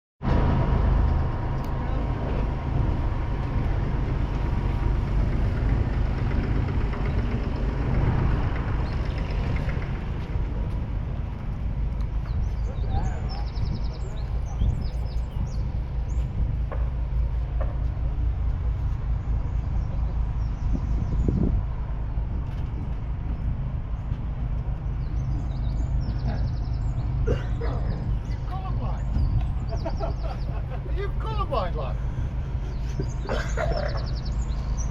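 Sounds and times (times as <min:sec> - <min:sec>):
diesel tractor engine running: 0:00.2 - 0:34.9.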